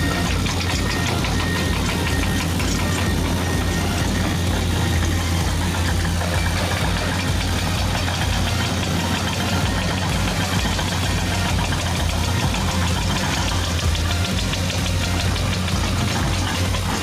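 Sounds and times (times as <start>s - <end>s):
toy excavator motor hum: 0.0s - 17.0s.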